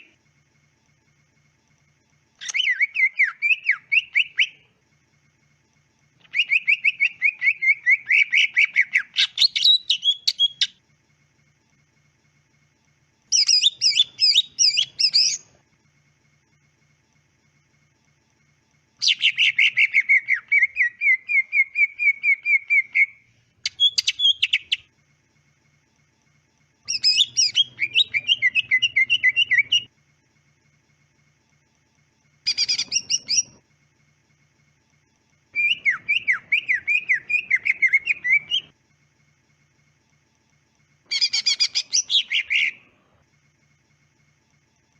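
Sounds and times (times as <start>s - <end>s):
bird chirping: 2.4s - 4.7s, 6.2s - 10.8s, 13.3s - 15.6s, 19.0s - 24.9s, 26.8s - 29.9s, 32.4s - 33.6s, 35.5s - 38.7s, 41.0s - 42.9s.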